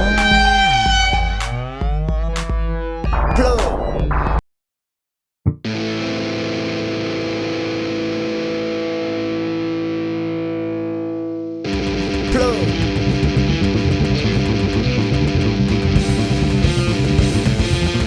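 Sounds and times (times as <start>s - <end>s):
distorted electric guitar chord: 0.0s - 1.7s, 5.6s - 18.0s
heavy metal riff with drums: 0.0s - 2.1s, 11.7s - 18.0s.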